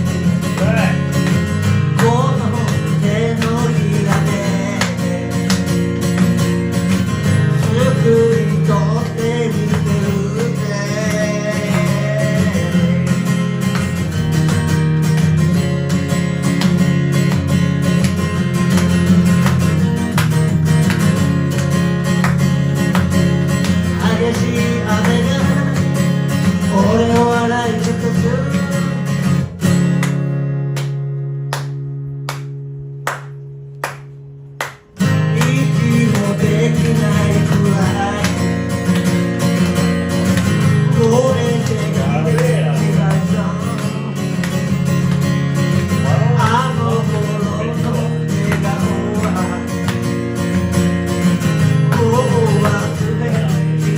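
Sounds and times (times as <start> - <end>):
acoustic guitar strumming chords: 0.0 - 53.9.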